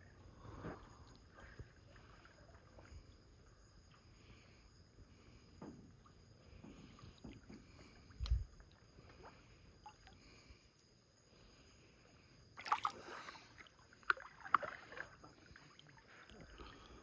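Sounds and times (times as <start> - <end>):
water splashing around waders: 12.6 - 16.8.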